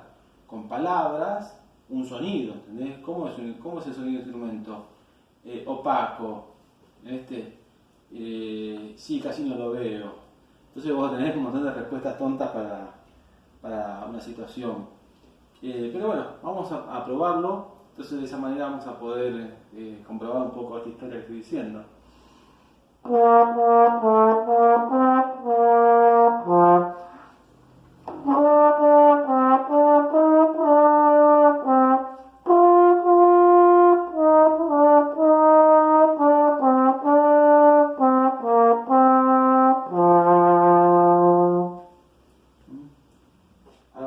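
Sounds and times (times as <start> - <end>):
solo trombone melody: 23.0 - 27.4, 28.0 - 42.1.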